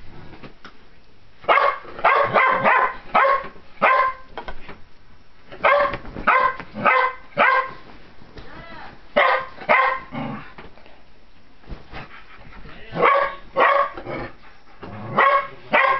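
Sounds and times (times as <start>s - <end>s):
dog barking: 1.5s - 4.3s, 5.6s - 7.8s, 9.2s - 10.1s, 13.0s - 14.0s, 15.1s - 15.9s.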